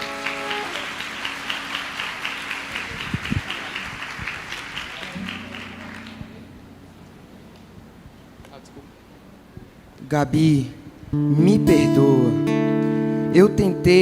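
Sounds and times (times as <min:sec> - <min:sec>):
audience applauding: 0:00.0 - 0:06.6.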